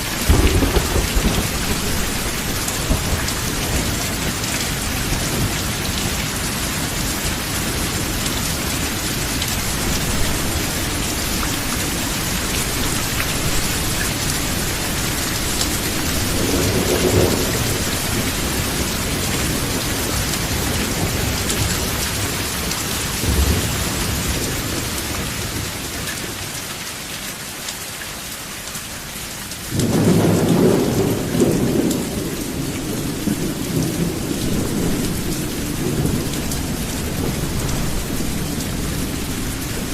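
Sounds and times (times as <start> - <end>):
low thunder rumbles: 0.0 - 25.8, 29.7 - 39.9
rain falling on a roof: 0.0 - 39.9
loud thunderclap: 0.1 - 5.8, 12.4 - 22.3, 29.8 - 39.9.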